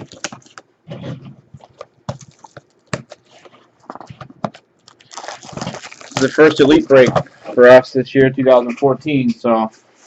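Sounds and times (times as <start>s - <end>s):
cardboard boxes clicking and tapping: 0.0s - 4.7s
plastic wrap crinkling: 0.0s - 7.8s.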